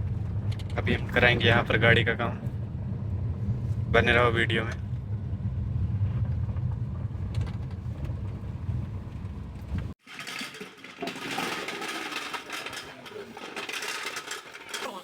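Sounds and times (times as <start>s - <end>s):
car engine rumbling: 0.0s - 10.0s
light clatter and clinks: 10.0s - 15.0s.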